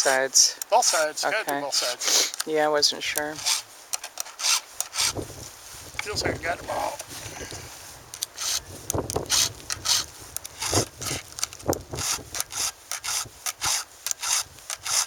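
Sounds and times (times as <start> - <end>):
hand file rasping on chainsaw chain: 0.8 - 2.4, 3.3 - 5.2, 8.3 - 8.6, 9.2 - 11.2, 11.9 - 15.0.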